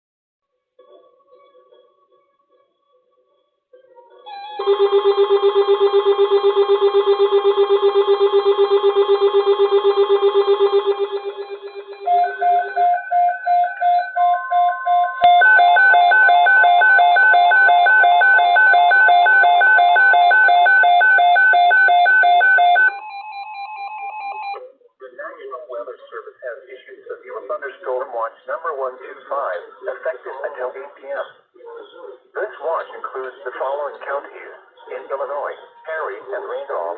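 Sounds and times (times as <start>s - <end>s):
steady tone: 4.3s - 18.3s
fast-pulsing electronic alarm: 4.3s - 24.6s
two-tone beeping alarm: 4.3s - 24.7s.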